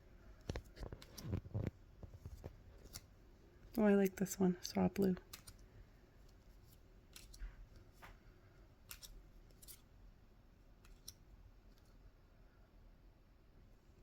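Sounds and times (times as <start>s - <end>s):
trading cards clicking and sliding: 0.4s - 5.6s, 6.3s - 8.2s, 8.8s - 9.9s, 10.8s - 12.0s.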